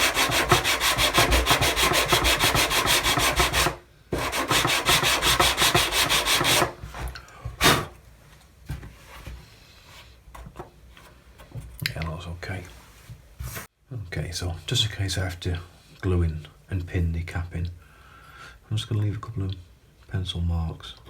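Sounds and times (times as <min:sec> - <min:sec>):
sandpaper rubbing on wood: 0:00.0 - 0:06.8
faint handling sounds: 0:06.8 - 0:13.7.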